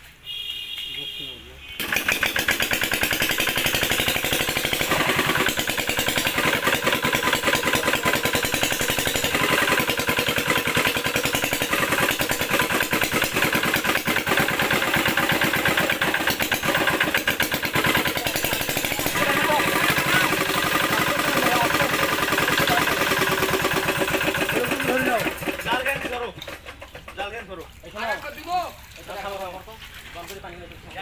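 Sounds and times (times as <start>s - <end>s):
small engine chugging: 1.7s - 27.5s.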